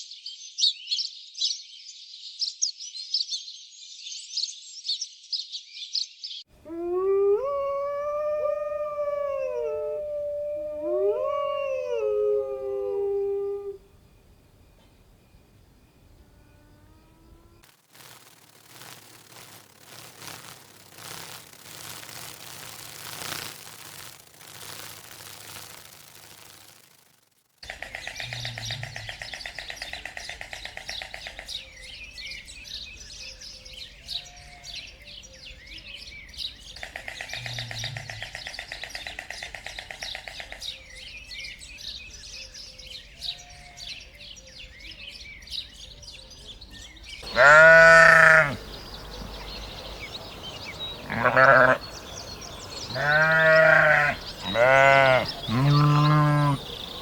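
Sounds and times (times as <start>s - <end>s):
rapid bird chirping: 17.2s - 33.7s, 36.3s - 43.4s, 44.0s - 57.0s
loud bleat: 47.3s - 48.6s, 51.0s - 51.8s, 52.9s - 56.6s.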